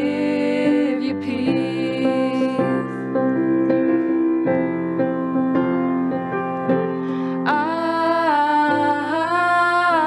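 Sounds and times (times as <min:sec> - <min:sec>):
person singing: 0:00.0 - 0:03.7, 0:07.4 - 0:10.0
piano playing sustained chords: 0:00.0 - 0:10.0.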